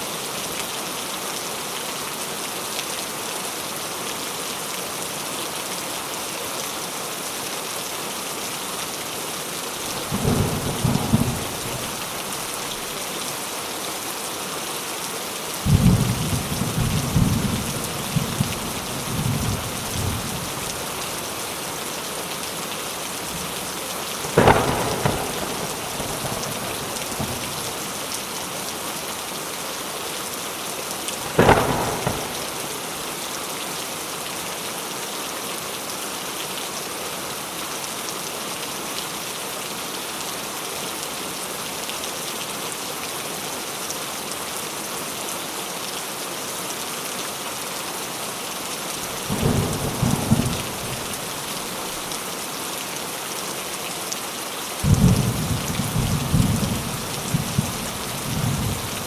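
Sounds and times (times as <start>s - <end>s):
steady rain falling: 0.0s - 59.0s
low rolling thunder rumbles: 9.9s - 12.9s, 15.7s - 21.2s, 24.2s - 28.1s, 31.2s - 33.2s, 49.1s - 52.1s, 54.8s - 59.0s
sharp thunder clap: 24.2s - 27.7s, 31.2s - 33.1s, 49.3s - 51.3s.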